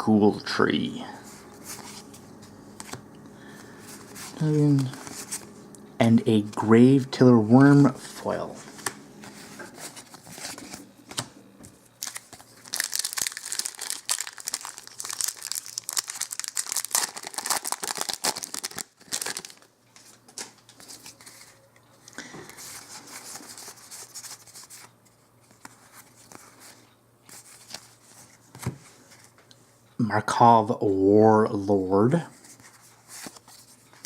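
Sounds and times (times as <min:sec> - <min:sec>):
foil wrapper tearing and crinkling: 0:12.0 - 0:19.7.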